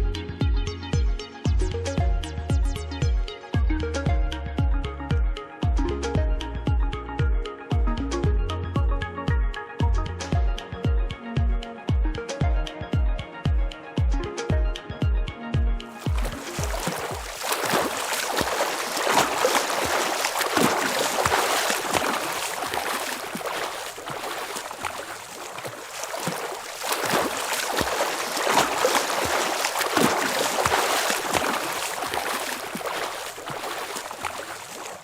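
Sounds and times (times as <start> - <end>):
water rushing and splashing: 15.9 - 35.0.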